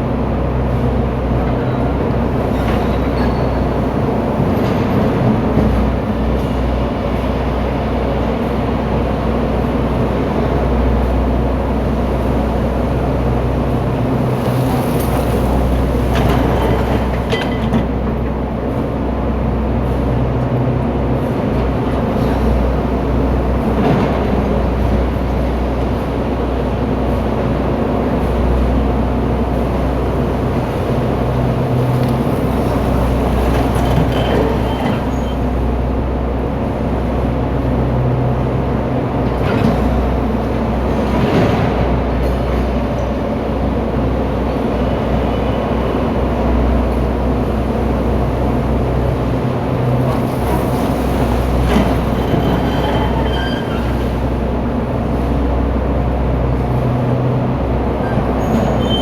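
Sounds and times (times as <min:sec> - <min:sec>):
heavy diesel machinery rumbling: 0:00.0 - 0:59.0
high metallic squeals: 0:52.2 - 0:54.4, 0:58.0 - 0:59.0.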